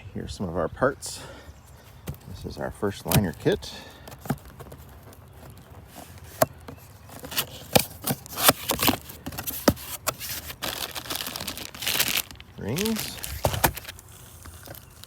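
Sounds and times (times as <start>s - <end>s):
parts and packaging clicking: 2.0s - 15.0s.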